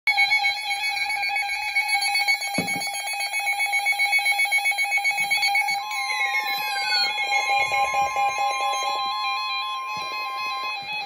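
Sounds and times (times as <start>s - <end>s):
pulsing electronic alert tones: 5.7s - 10.0s
higher electronic tone: 5.8s - 10.0s.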